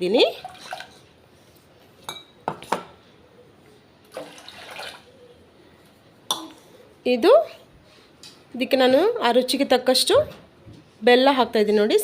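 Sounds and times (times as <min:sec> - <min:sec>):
glass clinking against pot: 0:02.1 - 0:02.4
water pouring into a pot: 0:04.1 - 0:05.0.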